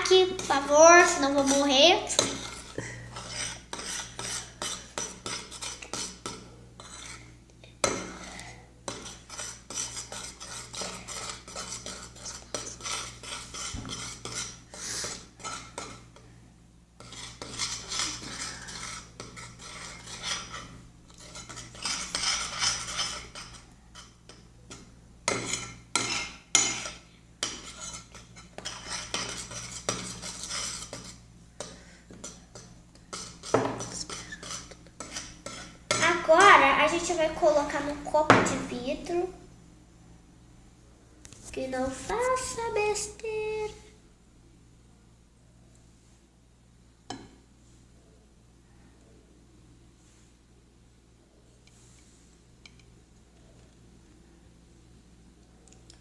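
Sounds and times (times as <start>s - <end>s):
utensil stirring sticky slime: 0.0s - 16.2s, 17.0s - 39.3s.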